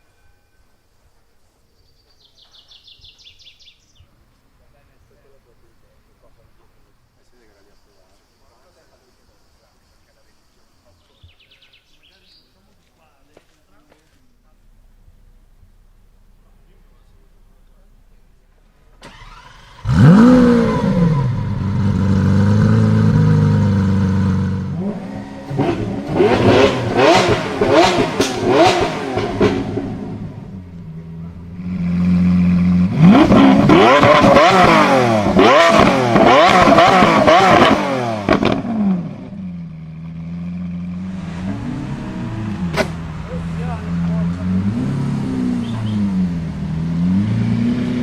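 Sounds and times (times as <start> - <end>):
sports car engine revving: 14.5 - 48.0.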